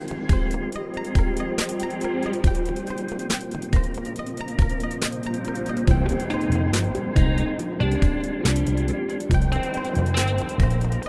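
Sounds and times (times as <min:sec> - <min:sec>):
electronic music with heavy beat: 0:00.0 - 0:11.0
deep kick drums: 0:05.9 - 0:08.6, 0:09.3 - 0:09.6.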